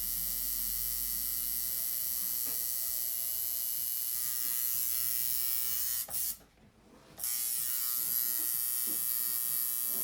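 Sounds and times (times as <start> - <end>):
electric tattoo machine buzzing: 0.0 - 6.4, 7.2 - 10.0.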